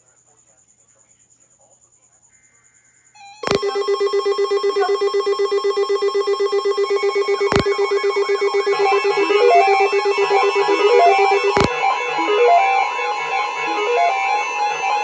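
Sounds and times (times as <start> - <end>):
pulsing electronic alarm buzz: 3.4 - 15.0
stepping melody of beeps: 3.4 - 15.0.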